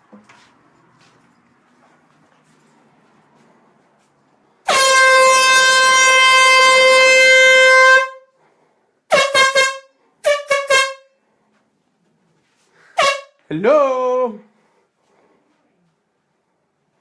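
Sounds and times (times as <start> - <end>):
air horn blasts: 4.6 - 8.5, 9.1 - 11.3, 12.8 - 13.5.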